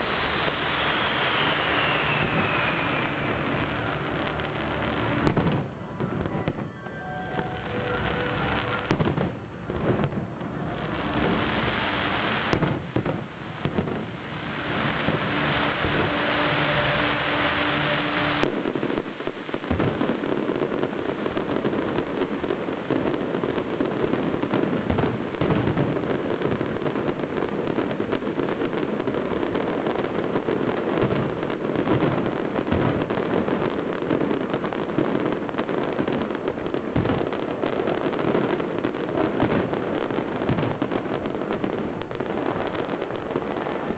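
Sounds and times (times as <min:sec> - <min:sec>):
fireworks bangs and crackling: 0:00.0 - 0:43.9
loud steady hiss: 0:00.0 - 0:43.9
faint held tones: 0:02.5 - 0:09.7.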